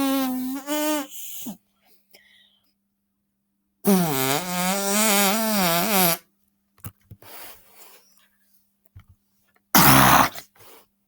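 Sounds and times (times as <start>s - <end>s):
boy imitating a fart: 0.0s - 1.2s, 3.8s - 6.2s, 9.8s - 10.5s
faint breathy sounds: 1.0s - 2.8s.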